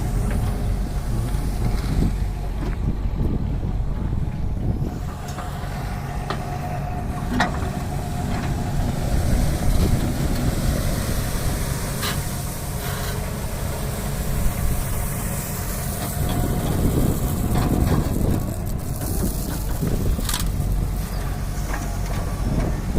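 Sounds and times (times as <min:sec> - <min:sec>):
heavy diesel machinery running: 0:00.0 - 0:22.9.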